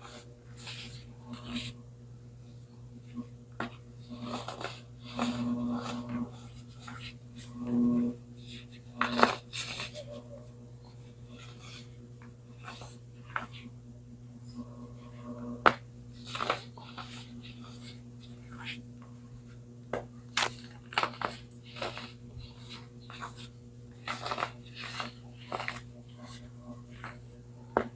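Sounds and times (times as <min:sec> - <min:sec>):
low electrical hum: 0:00.0 - 0:27.9
frozen baking soda crunching: 0:20.3 - 0:26.0.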